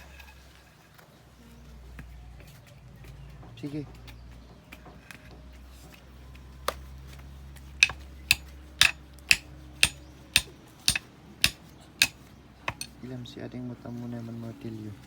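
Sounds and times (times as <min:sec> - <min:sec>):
hammer blows ringing: 0:07.8 - 0:12.9.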